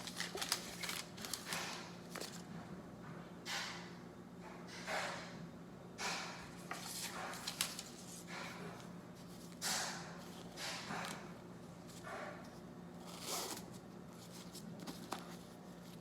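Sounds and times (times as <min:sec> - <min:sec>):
paper and box rustling: 0:00.0 - 0:02.5, 0:06.7 - 0:08.2, 0:13.1 - 0:16.0.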